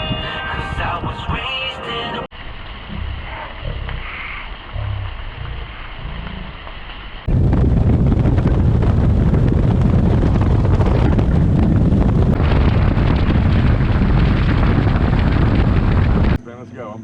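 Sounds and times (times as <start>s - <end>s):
wind buffeting microphone: 7.2s - 16.4s.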